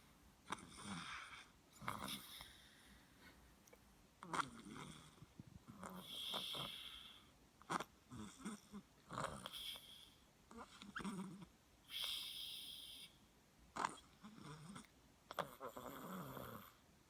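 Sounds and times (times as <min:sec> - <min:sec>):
person snoring with wheeze: 0:04.2 - 0:10.0.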